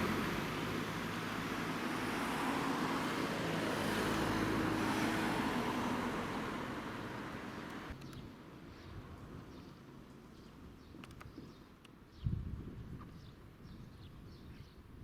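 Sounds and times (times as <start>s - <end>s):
vehicle engine and tyre noise: 0.0s - 8.2s.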